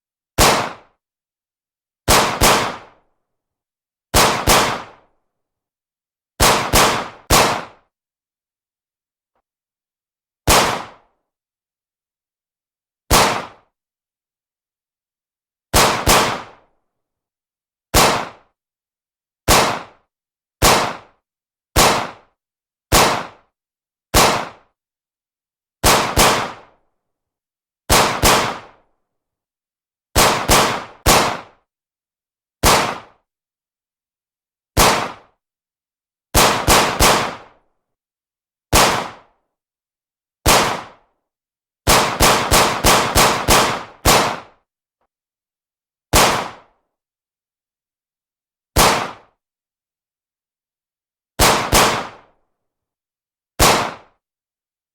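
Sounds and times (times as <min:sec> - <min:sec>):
pistol shots: 0:00.4 - 0:00.9, 0:02.1 - 0:02.9, 0:04.2 - 0:05.0, 0:06.4 - 0:07.8, 0:10.5 - 0:11.0, 0:13.1 - 0:13.6, 0:15.8 - 0:16.6, 0:18.0 - 0:18.4, 0:19.5 - 0:20.0, 0:20.6 - 0:21.1, 0:21.8 - 0:22.2, 0:22.9 - 0:23.4, 0:24.1 - 0:24.6, 0:25.8 - 0:26.7, 0:27.9 - 0:28.8, 0:30.2 - 0:31.6, 0:32.6 - 0:33.1, 0:34.8 - 0:35.2, 0:36.4 - 0:37.5, 0:38.8 - 0:39.2, 0:40.5 - 0:40.9, 0:41.9 - 0:44.6, 0:46.1 - 0:46.6, 0:48.8 - 0:49.2, 0:51.4 - 0:52.2, 0:53.6 - 0:54.0.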